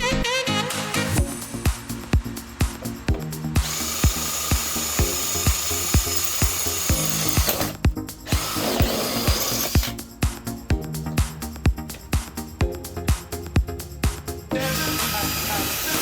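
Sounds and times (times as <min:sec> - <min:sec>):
background music with steady beat: 0:00.0 - 0:16.0
power drill running: 0:03.6 - 0:10.0, 0:14.6 - 0:16.0.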